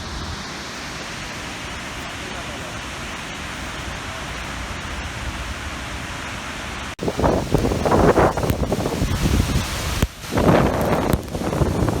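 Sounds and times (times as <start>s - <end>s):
waterfall rushing water: 0.0s - 12.0s
wind buffeting microphone: 7.0s - 12.0s.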